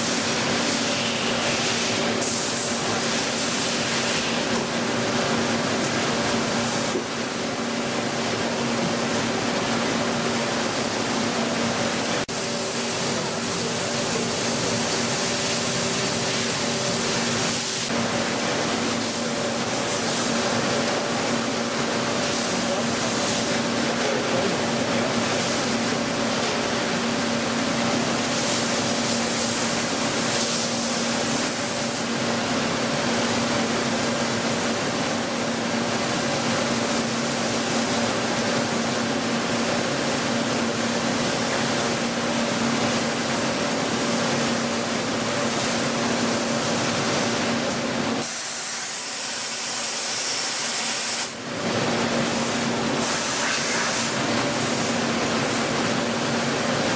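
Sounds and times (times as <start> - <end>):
coolant spraying hiss: 48.2 - 51.4, 52.2 - 54.9.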